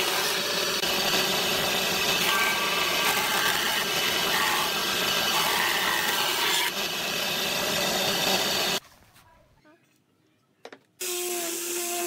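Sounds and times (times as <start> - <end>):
power tool working wood: 0.0 - 8.8.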